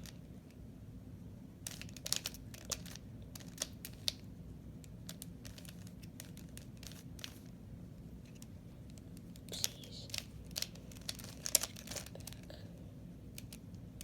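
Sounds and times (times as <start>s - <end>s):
puzzle cube plastic clicks: 1.6s - 4.2s, 4.9s - 7.4s, 8.3s - 12.5s, 13.3s - 13.8s.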